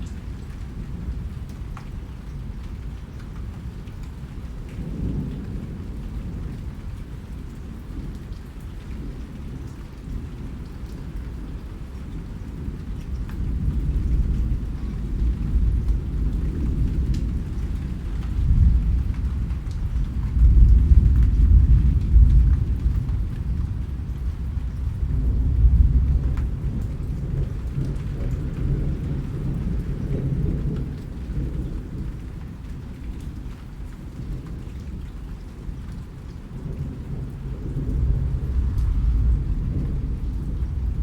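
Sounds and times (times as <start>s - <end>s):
steady rain: 0.0s - 41.0s
rolling thunder: 11.7s - 32.8s, 35.7s - 41.0s.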